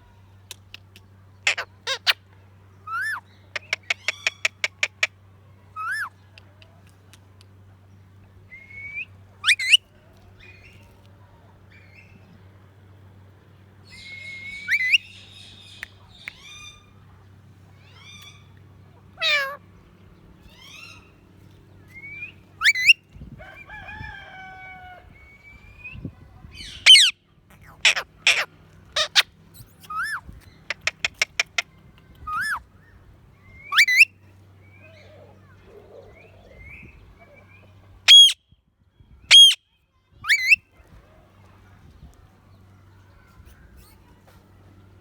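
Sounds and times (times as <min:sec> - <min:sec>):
parrot screeching and whistling: 0:14.0 - 0:15.1, 0:19.2 - 0:19.6, 0:22.6 - 0:22.9, 0:26.7 - 0:27.1, 0:38.1 - 0:38.4, 0:39.3 - 0:39.6.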